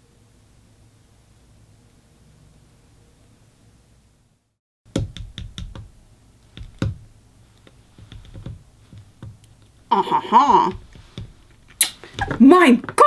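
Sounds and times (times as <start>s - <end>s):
faint room hiss: 0.0s - 13.0s
light clicks and knocks: 5.0s - 9.7s, 10.7s - 13.0s.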